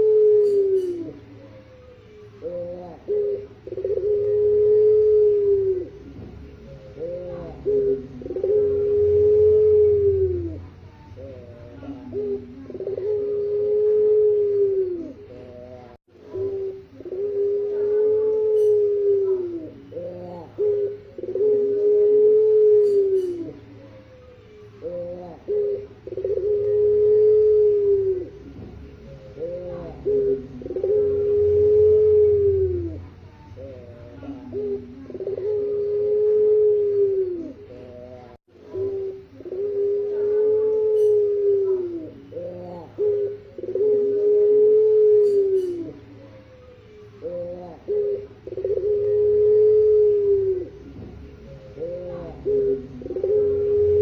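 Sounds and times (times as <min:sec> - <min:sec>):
dove cooing: 0:00.0 - 0:54.0.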